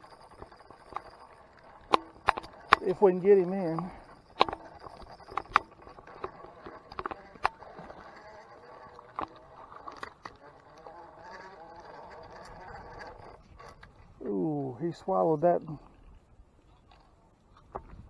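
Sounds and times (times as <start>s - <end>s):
sharp clicks: 0.0s - 10.8s
fishing reel whirring: 0.0s - 17.2s.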